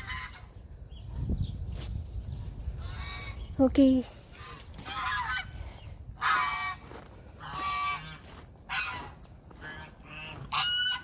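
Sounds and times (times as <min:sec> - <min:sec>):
geese honking: 0:00.0 - 0:00.5, 0:04.4 - 0:05.6, 0:06.2 - 0:11.0.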